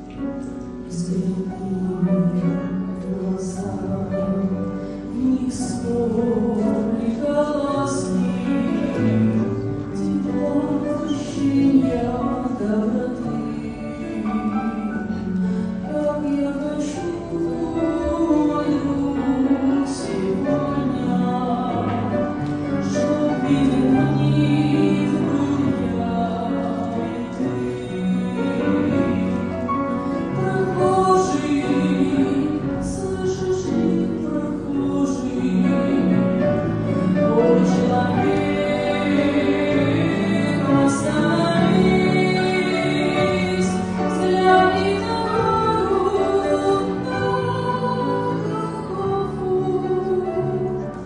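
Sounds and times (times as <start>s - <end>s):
church choir singing a hymn: 17.7s - 50.6s.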